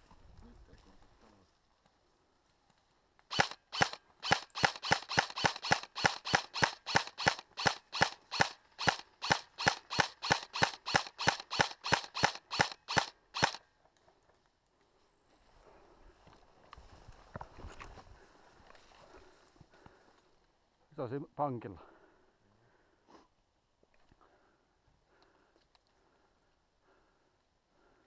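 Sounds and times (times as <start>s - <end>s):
airsoft gun shots: 3.3s - 13.6s.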